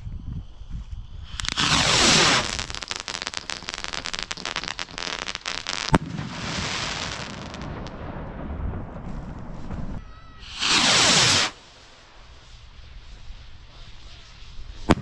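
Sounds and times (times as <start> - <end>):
firework rocket whoosh: 0.0 - 15.0
firework crackling: 0.2 - 15.0
sharp firework bang: 1.3 - 11.7, 14.1 - 15.0.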